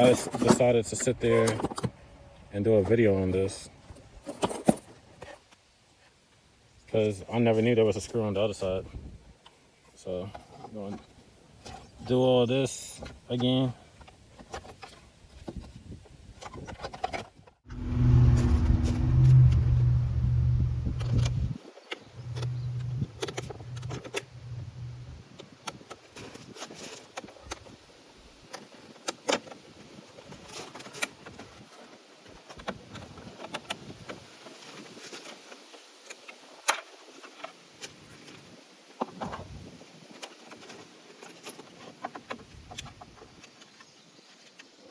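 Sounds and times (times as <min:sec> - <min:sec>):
loud steady low hum: 0:17.7 - 0:25.2.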